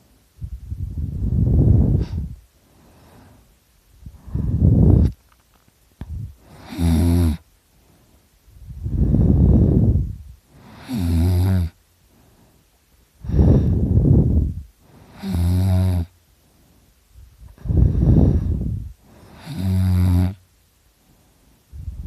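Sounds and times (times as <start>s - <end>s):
man snoring loudly: 6.5s - 7.4s, 10.6s - 11.8s, 15.1s - 16.1s, 19.3s - 20.4s.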